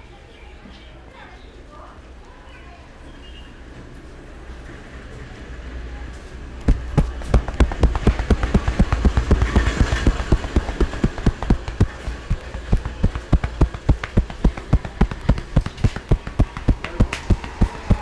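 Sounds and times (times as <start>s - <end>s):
hands slapping body in massage: 6.6s - 18.0s.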